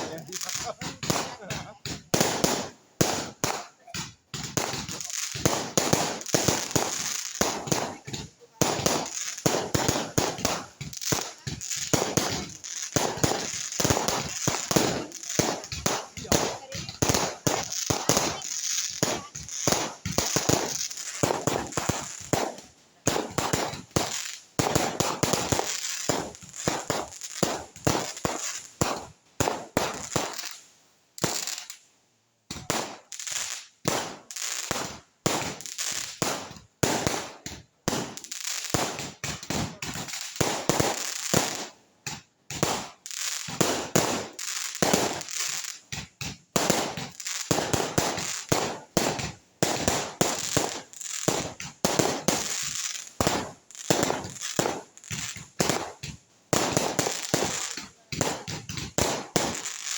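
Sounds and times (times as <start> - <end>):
fireworks bangs and crackles: 0.0 - 59.9.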